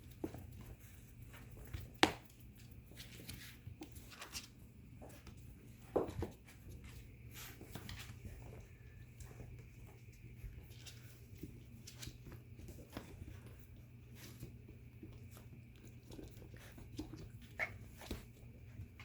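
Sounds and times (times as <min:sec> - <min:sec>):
low steady hum: 0:00.0 - 0:19.0
puppy paws clicking on hard floor: 0:00.0 - 0:19.0.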